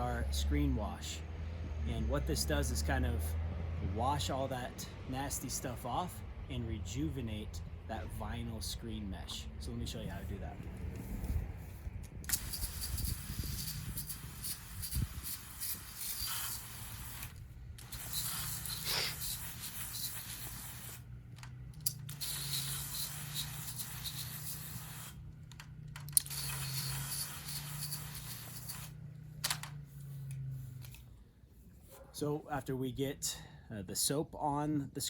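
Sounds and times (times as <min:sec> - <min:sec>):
screen wash spraying hiss: 0:11.7 - 0:21.1, 0:22.0 - 0:25.2, 0:26.2 - 0:29.0.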